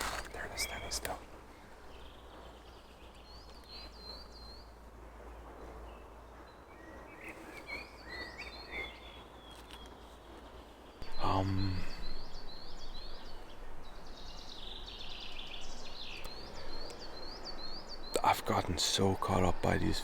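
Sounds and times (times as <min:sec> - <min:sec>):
faint birdsong: 0:00.0 - 0:20.0.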